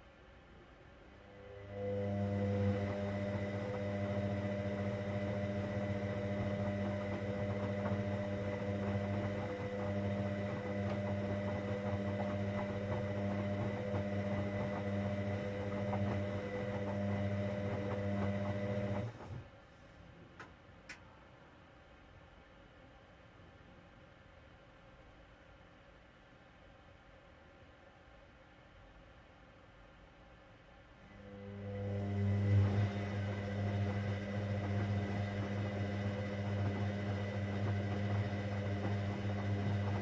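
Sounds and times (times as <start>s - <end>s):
washing machine humming: 1.2s - 19.6s, 31.0s - 40.0s.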